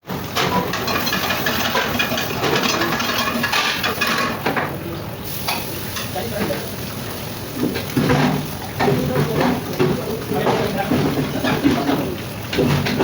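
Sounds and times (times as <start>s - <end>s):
metal utensil scraping a pan: 0.4s - 4.4s
food sizzling in a hot pan: 0.4s - 13.0s.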